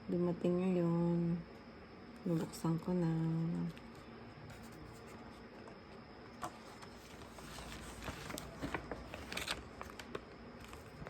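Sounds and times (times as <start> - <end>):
package wrapping rustling: 6.4 - 11.0.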